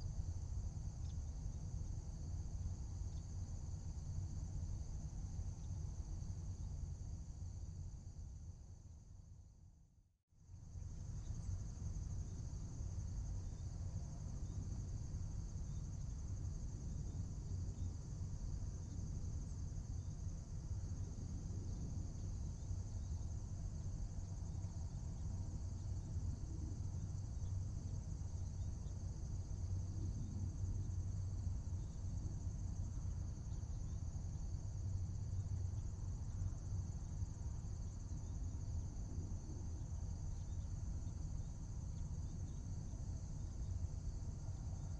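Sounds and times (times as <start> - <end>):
crickets trilling: 10.8 - 44.9.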